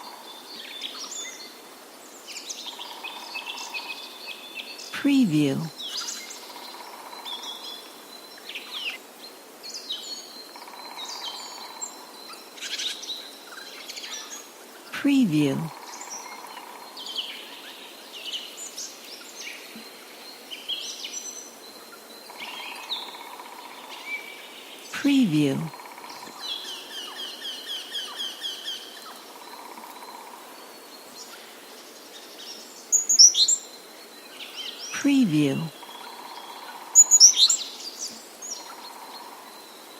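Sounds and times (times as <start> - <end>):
faint outdoor hiss: 0.0 - 39.9.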